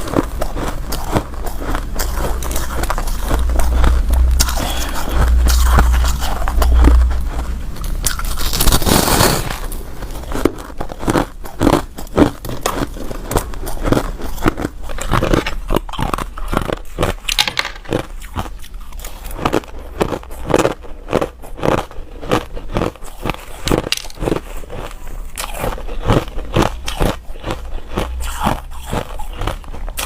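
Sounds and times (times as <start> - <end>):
ice being chewed: 0.0 - 30.0.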